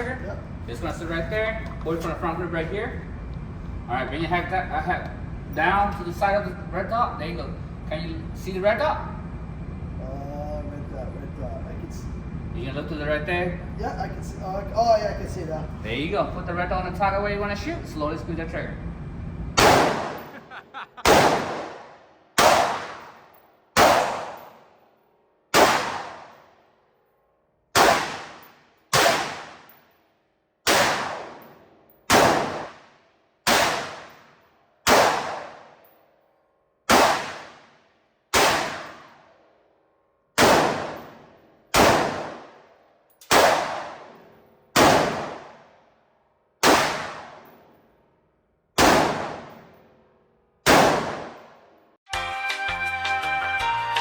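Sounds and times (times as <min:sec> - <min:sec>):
rifle shots: 0:19.6 - 0:24.7, 0:25.5 - 0:26.5, 0:27.7 - 0:29.9, 0:30.6 - 0:35.9, 0:36.9 - 0:39.3, 0:40.4 - 0:45.8, 0:46.6 - 0:47.7, 0:48.8 - 0:49.8, 0:50.6 - 0:51.7.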